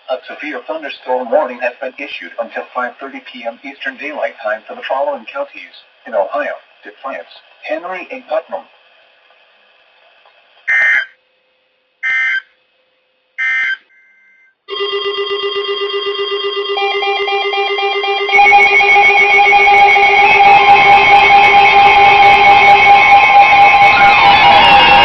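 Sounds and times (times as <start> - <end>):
music with layered tones: 16.8 - 25.0.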